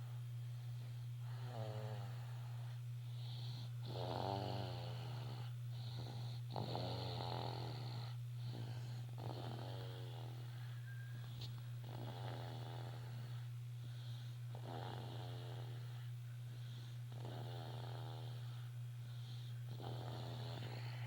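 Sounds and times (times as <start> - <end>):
steady low hum: 0.0 - 21.0
person snoring: 1.2 - 2.6, 3.4 - 10.6, 11.8 - 13.4, 14.5 - 16.0, 17.1 - 18.6, 19.7 - 21.0.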